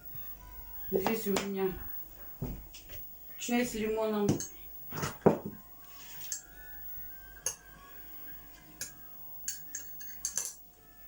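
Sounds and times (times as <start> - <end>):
cutlery clinking on tableware: 6.2 - 6.5, 7.4 - 7.7, 8.8 - 10.6.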